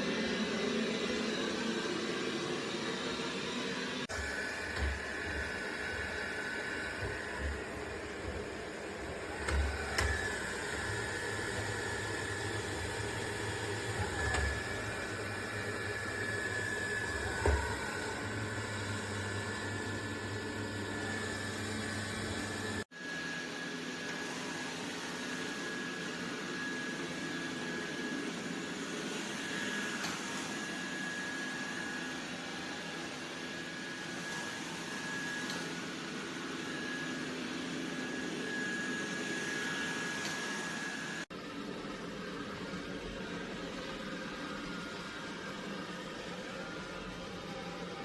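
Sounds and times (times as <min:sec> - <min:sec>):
robot vacuum whirring: 0:00.0 - 0:48.0.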